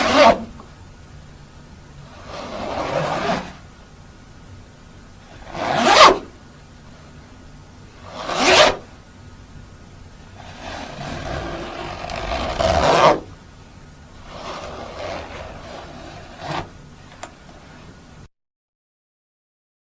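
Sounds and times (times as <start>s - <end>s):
jacket zipper rasping: 0.0s - 0.5s, 2.1s - 3.6s, 5.3s - 6.3s, 8.0s - 8.9s, 10.3s - 13.4s, 14.2s - 18.0s.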